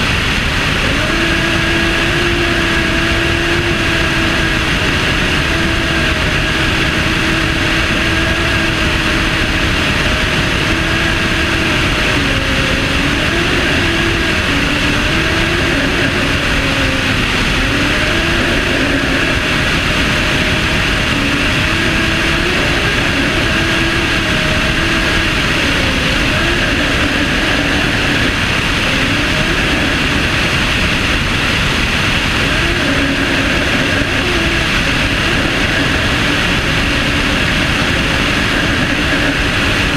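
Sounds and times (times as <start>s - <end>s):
propeller aircraft engine drone: 0.0s - 39.9s.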